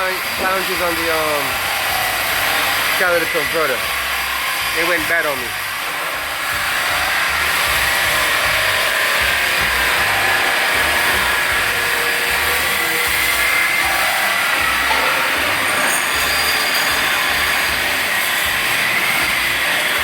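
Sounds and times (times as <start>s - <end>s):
power tool whining: 0.0s - 20.0s.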